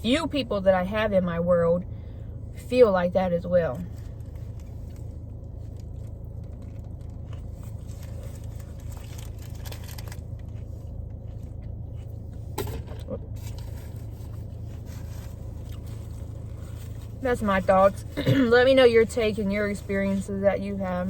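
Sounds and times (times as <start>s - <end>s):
low hum: 0.0s - 21.0s
person chewing food: 5.7s - 12.6s.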